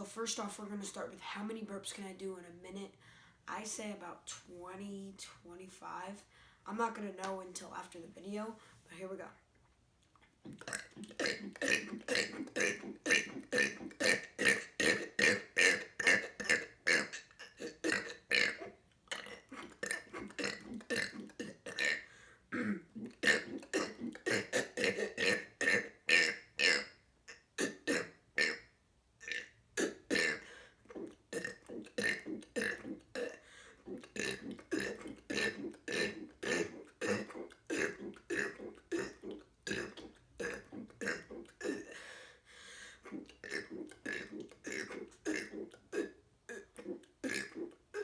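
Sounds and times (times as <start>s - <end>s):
man burping: 10.4s - 28.6s, 29.2s - 42.1s, 43.0s - 48.0s.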